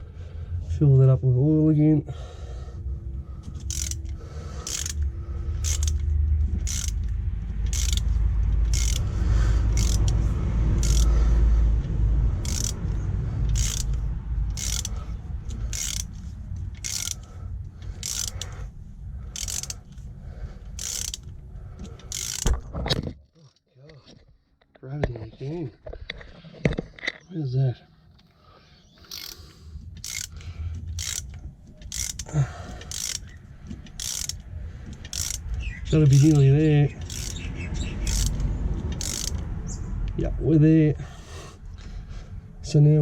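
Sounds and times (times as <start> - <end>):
low handling rumble: 0.0 - 22.9, 29.0 - 43.0
ratchet wrench clicking: 3.4 - 22.6, 29.0 - 39.5.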